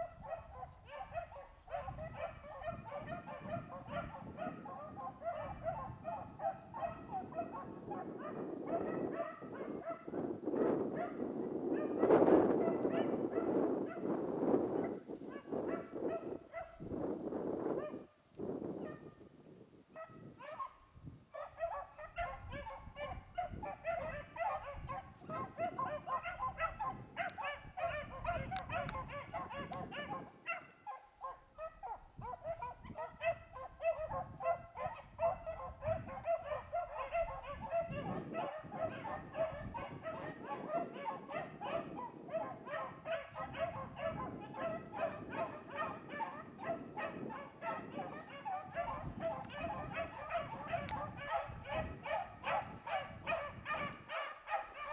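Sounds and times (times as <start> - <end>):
dogs baying: 0.0 - 10.1, 21.4 - 54.9.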